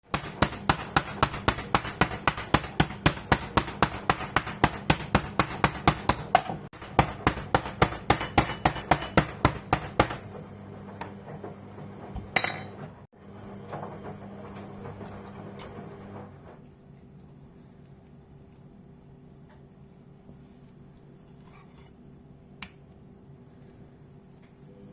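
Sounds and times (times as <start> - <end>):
cleaver chopping meat on board: 0.1 - 10.2.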